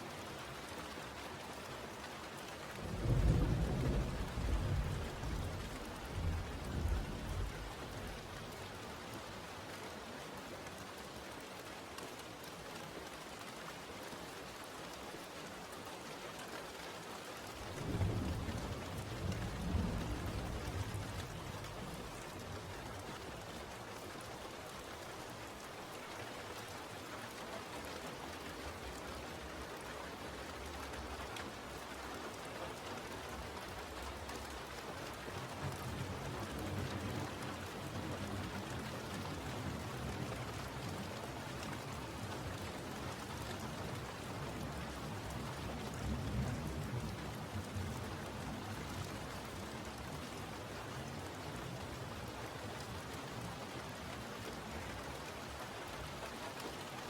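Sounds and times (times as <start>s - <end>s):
steady rain falling: 0.0s - 57.0s
thunder rumbling: 17.6s - 22.4s.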